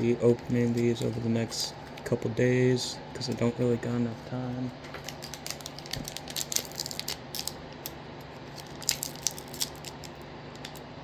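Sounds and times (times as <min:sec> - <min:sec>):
packaging crinkling and crackling: 0:00.2 - 0:02.1, 0:04.8 - 0:10.9.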